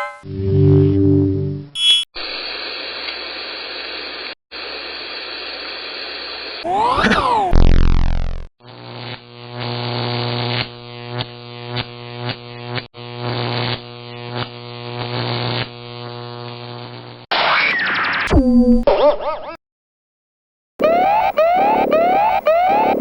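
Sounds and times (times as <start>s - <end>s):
synthetic pitch sweep effects: 0.0s - 1.7s, 20.8s - 23.0s
low electronic buzzing tone: 0.0s - 2.1s, 7.5s - 17.2s.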